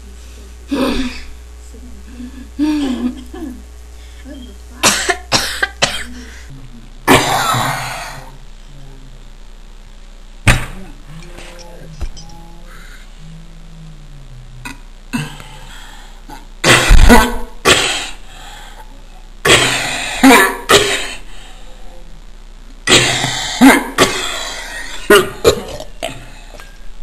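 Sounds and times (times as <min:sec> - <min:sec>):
person coughing hard: 0:04.8 - 0:06.2, 0:07.1 - 0:08.2, 0:16.6 - 0:18.2, 0:19.4 - 0:21.2, 0:22.9 - 0:26.4.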